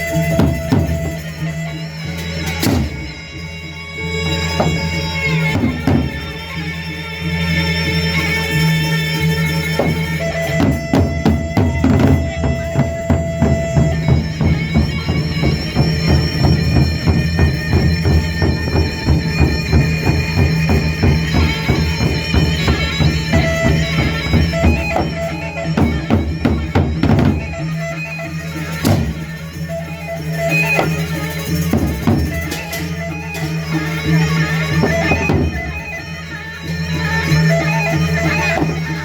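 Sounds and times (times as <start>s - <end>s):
droning melody: 0.0s - 39.0s.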